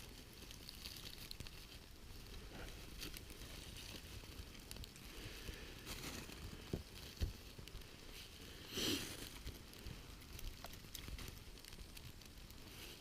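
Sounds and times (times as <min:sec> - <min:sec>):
campfire crackling and popping: 0:00.0 - 0:13.0
brief hiss: 0:08.7 - 0:09.2.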